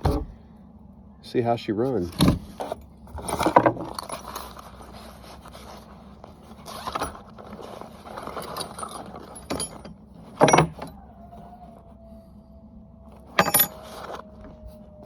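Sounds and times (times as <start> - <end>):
parts and packaging rustling: 1.9 - 12.0, 13.1 - 15.0.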